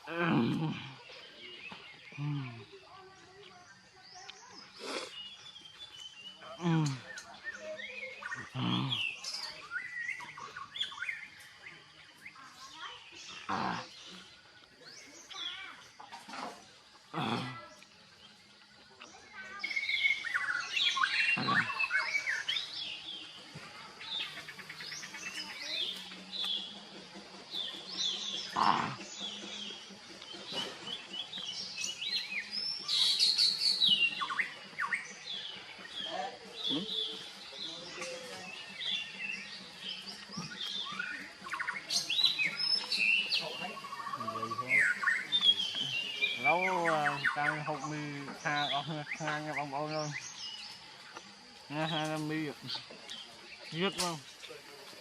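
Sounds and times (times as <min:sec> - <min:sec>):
birds chirping and squawking: 0:00.0 - 0:55.0.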